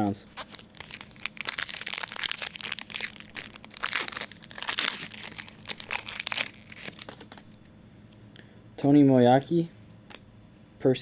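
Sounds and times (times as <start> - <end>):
foil wrapper crinkling: 0.3 - 7.7.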